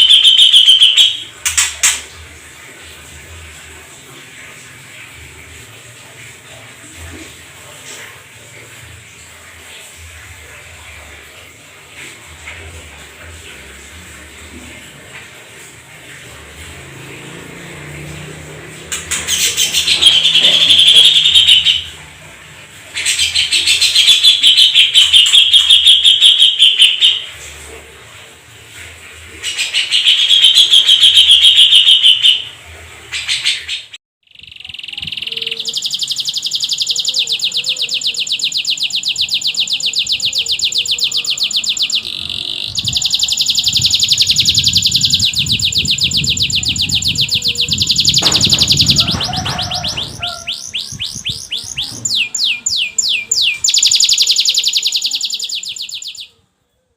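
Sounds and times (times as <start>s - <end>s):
canary singing in trills: 0.0s - 2.2s, 15.9s - 27.4s, 29.3s - 56.9s.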